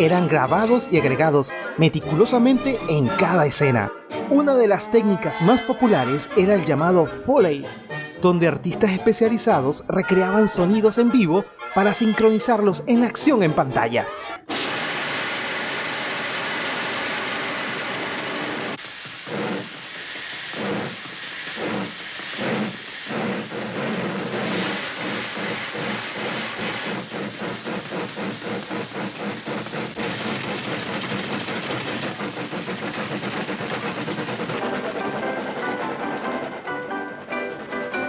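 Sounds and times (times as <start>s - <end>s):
steam hissing: 0.0s - 3.7s, 14.5s - 38.0s
steam locomotive chuffing: 0.0s - 7.5s, 14.5s - 38.0s.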